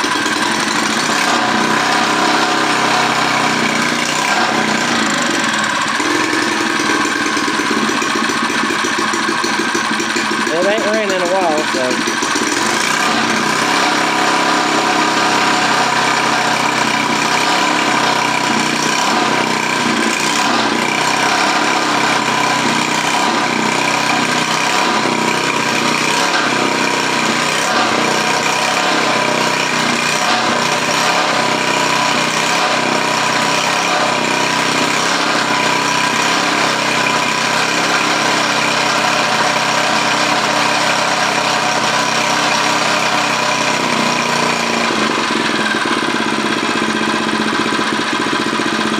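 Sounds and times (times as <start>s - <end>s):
small engine running: 0.0s - 48.9s.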